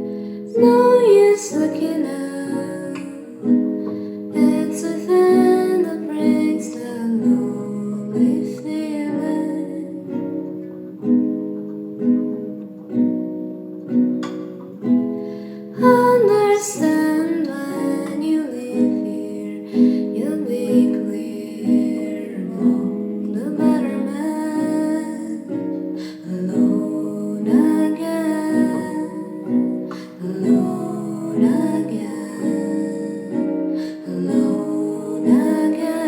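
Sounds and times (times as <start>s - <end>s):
guitar plucking chord: 0.0s - 36.0s
wordless voice gliding: 15.6s - 36.0s.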